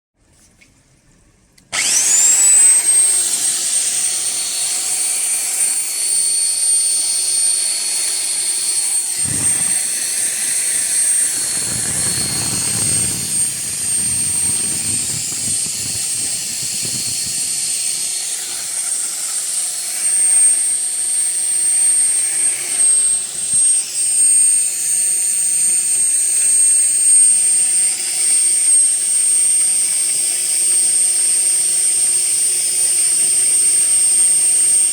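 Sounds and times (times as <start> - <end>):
drilling machine motor whine: 1.6 - 34.9
low rumble: 9.2 - 17.6.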